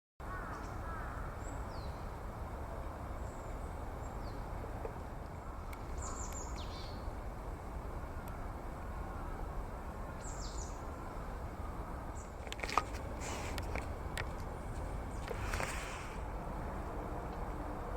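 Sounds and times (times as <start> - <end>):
steady background noise: 0.2 - 17.9.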